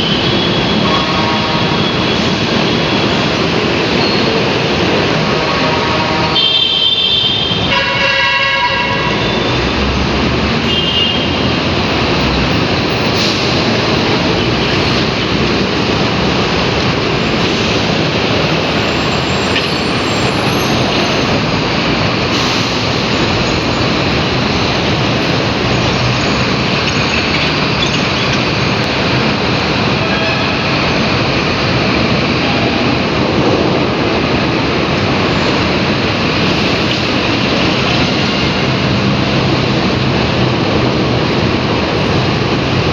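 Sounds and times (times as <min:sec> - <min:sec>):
road noise: 0:00.0 - 0:42.9
vehicle horn: 0:00.6 - 0:02.2, 0:05.2 - 0:09.6, 0:10.6 - 0:11.4.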